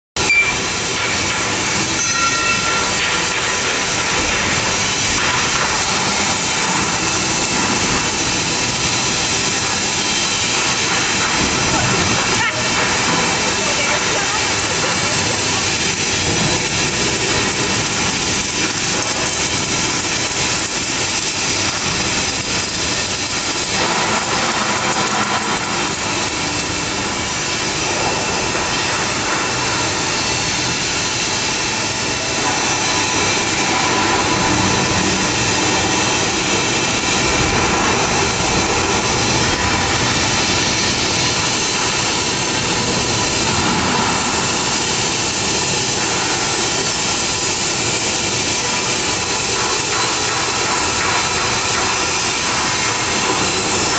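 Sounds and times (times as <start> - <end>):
welding machine hiss and hum: 0.2 - 53.9.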